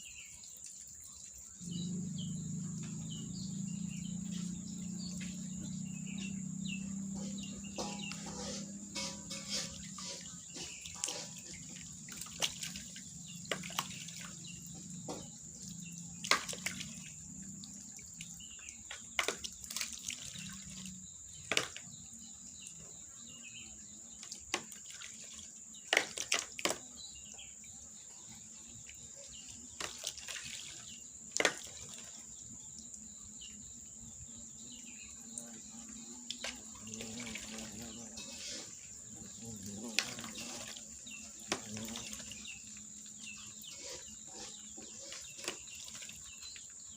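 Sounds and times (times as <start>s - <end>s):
water splashes and drips: 0.0s - 3.2s, 4.0s - 22.9s, 24.1s - 27.0s, 28.7s - 33.0s, 35.3s - 46.9s
high-pitched insect drone: 1.5s - 10.2s.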